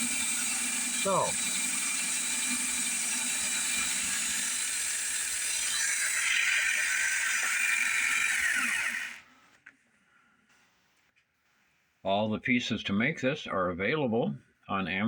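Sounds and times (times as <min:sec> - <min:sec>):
drill motor whirring: 0:00.0 - 0:09.3.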